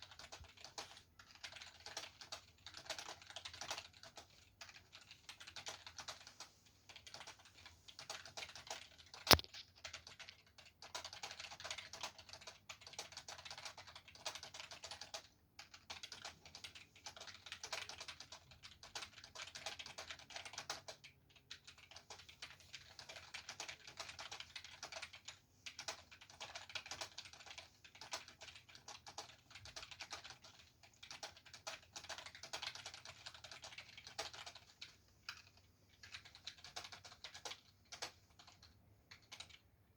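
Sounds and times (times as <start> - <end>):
typing on computer keyboard: 0.0 - 39.8
loud keyboard click: 9.1 - 9.6.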